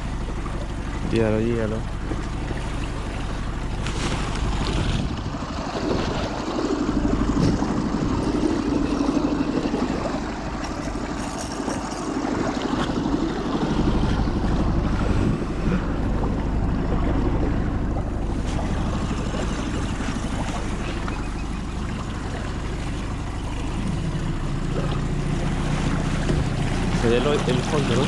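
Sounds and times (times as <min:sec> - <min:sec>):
wind buffeting microphone: 0:00.0 - 0:21.4
low steady drone: 0:00.0 - 0:28.0
moving water: 0:00.0 - 0:28.0.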